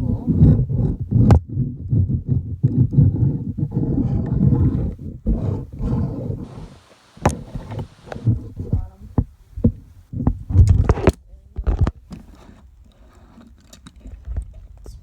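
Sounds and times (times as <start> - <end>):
toy car handling rubbing: 0.0 - 11.1.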